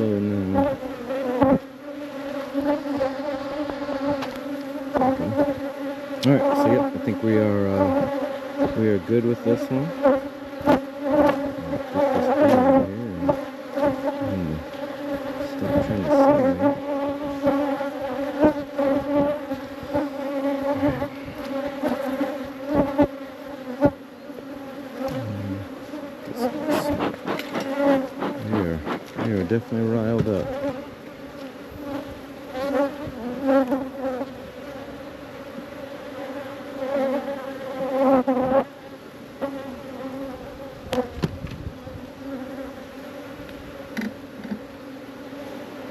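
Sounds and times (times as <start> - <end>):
bees buzzing: 0.0 - 45.9
bees flying close past: 0.0 - 45.9.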